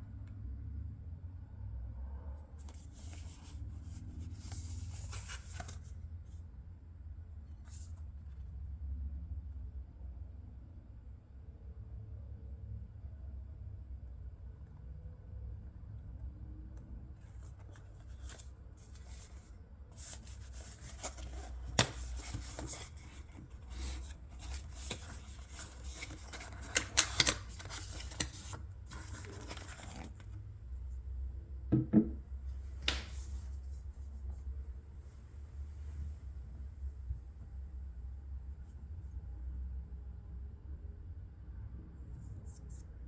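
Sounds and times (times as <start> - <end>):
low steady hum: 0.0 - 43.0
packaging rustling and scraping: 17.3 - 30.4.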